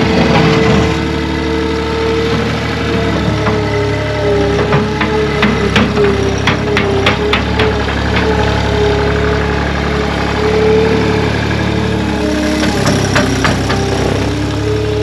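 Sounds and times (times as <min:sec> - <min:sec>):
chainsaw cutting wood: 0:02.2 - 0:08.7, 0:12.4 - 0:14.6
sharp knocks: 0:03.2 - 0:03.8, 0:04.4 - 0:08.6, 0:12.6 - 0:14.2.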